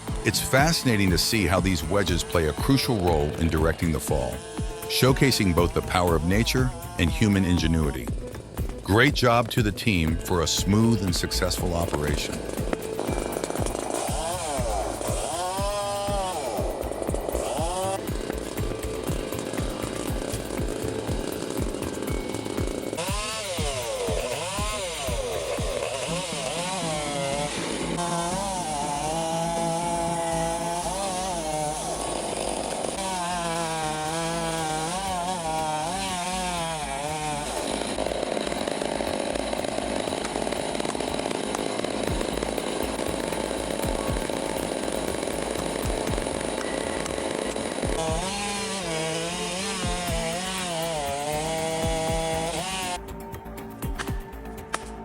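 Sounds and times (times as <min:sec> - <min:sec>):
chainsaw cutting timber: 0:00.0 - 0:55.0.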